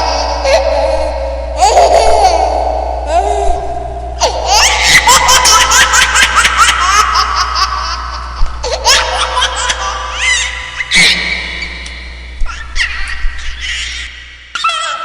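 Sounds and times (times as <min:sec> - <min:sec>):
person laughing: 0:04.2 - 0:11.2.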